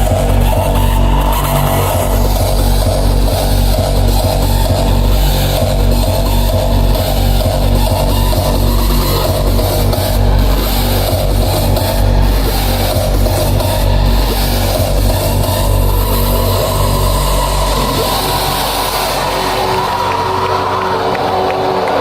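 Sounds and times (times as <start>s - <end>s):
hardstyle dance music: 0.0s - 22.0s.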